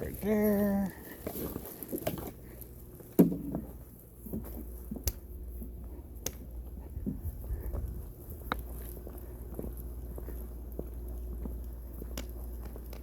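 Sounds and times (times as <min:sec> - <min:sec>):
low steady rumble: 0:00.0 - 0:13.0.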